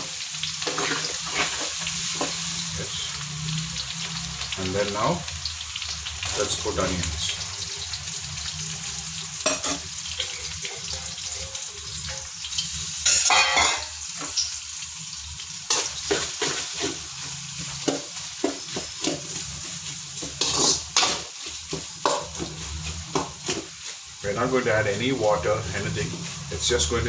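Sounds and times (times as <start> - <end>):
onions sizzling in oil: 0.0 - 27.0
spoon scraping a pan: 0.6 - 2.5, 9.4 - 14.6, 15.7 - 24.1.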